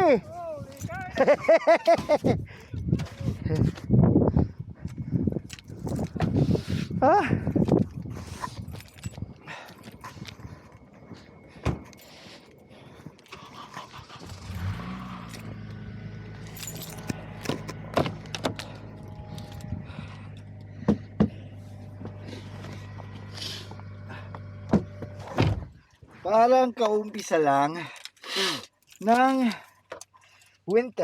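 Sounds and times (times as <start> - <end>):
car engine starting and idling: 13.1 - 25.7.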